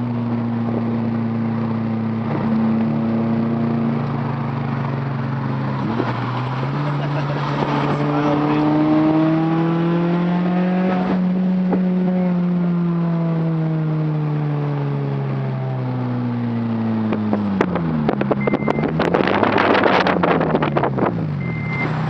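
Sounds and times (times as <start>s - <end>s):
car engine and exhaust flyby: 0.7s - 13.4s.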